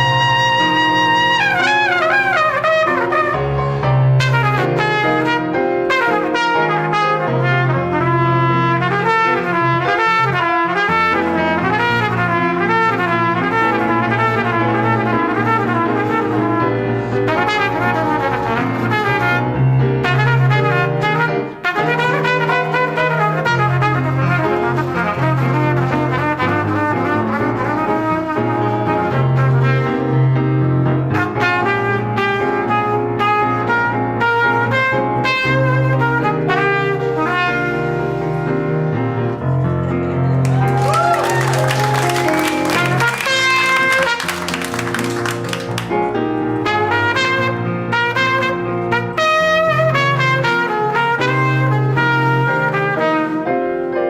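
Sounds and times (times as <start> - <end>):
salsa music with brass: 0.0 - 30.3, 41.4 - 54.0.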